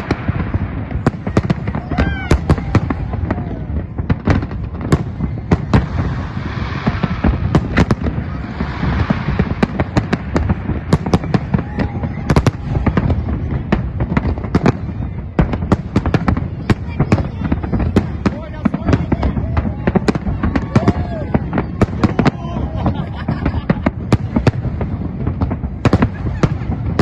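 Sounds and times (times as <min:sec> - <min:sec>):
fireworks bangs: 0:00.0 - 0:27.0
fireworks crackling: 0:00.0 - 0:27.0.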